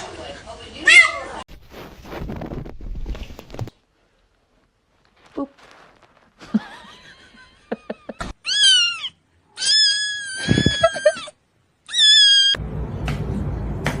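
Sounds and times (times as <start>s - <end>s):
small clicks and rustling: 2.1s - 6.6s
cat meowing: 8.4s - 11.3s, 11.9s - 12.6s.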